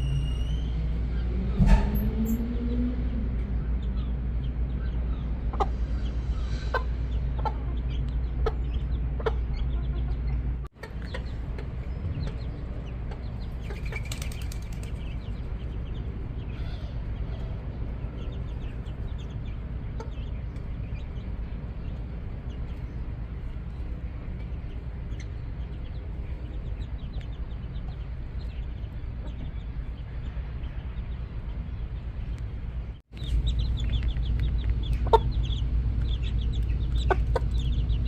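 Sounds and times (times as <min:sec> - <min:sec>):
steady low rumble: 0:00.6 - 0:38.0
chickens clucking: 0:04.4 - 0:21.2, 0:33.2 - 0:38.0.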